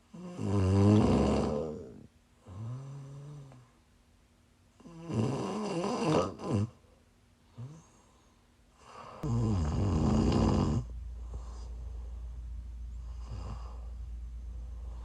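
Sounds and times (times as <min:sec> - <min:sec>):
steady low hum: 0:00.0 - 0:15.0
woman snoring: 0:00.1 - 0:03.6, 0:04.8 - 0:06.8, 0:07.6 - 0:08.0, 0:08.8 - 0:11.6, 0:13.1 - 0:14.0.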